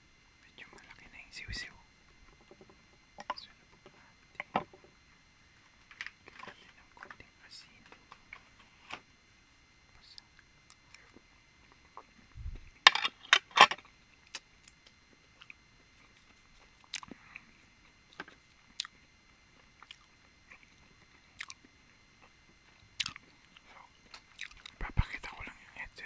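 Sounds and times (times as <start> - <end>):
soft chewing clicks: 9.9 - 12.1, 13.8 - 25.8.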